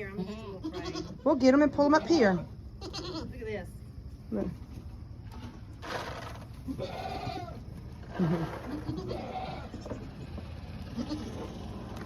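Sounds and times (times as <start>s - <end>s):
goats bleating: 0.0s - 3.4s, 6.6s - 11.6s.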